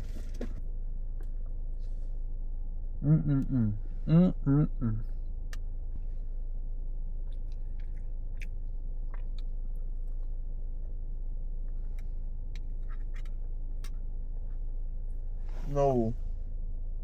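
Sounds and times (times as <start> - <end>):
steady low hum: 0.0 - 17.0
person chewing: 7.2 - 11.0, 11.6 - 14.7.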